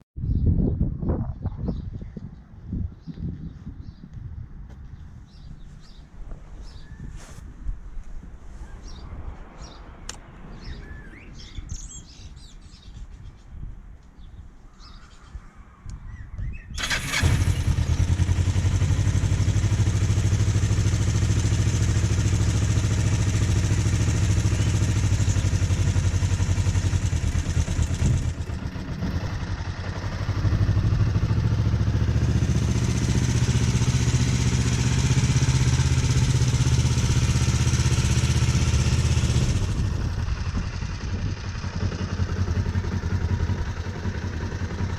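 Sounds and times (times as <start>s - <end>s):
birds chirping: 4.8s - 7.2s, 8.6s - 39.6s
motorcycle engine starting and idling: 16.8s - 44.9s.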